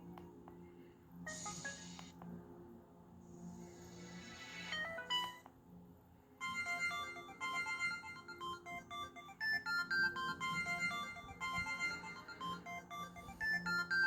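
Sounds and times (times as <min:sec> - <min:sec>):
phone ringtone beeping melody: 0:01.3 - 0:02.1, 0:04.7 - 0:05.4, 0:06.4 - 0:14.0.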